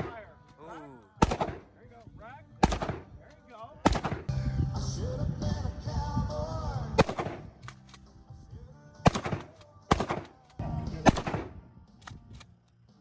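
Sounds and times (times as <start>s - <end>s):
loud gunshots with echo: 0.0s - 0.3s, 1.2s - 1.8s, 2.6s - 3.2s, 3.8s - 4.3s, 7.0s - 7.6s, 9.1s - 10.4s, 11.0s - 11.6s.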